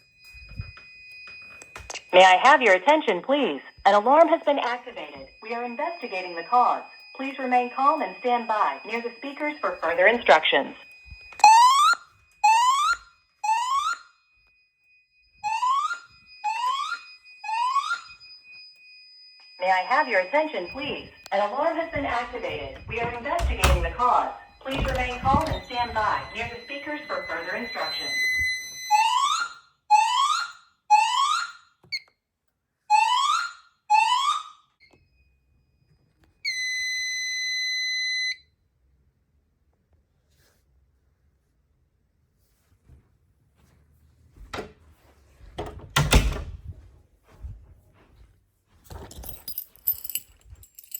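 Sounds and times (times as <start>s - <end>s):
fire alarm whoop tones: 0.0s - 14.3s, 15.1s - 32.0s, 32.9s - 35.1s, 36.4s - 38.4s
steady high beep: 19.6s - 28.4s.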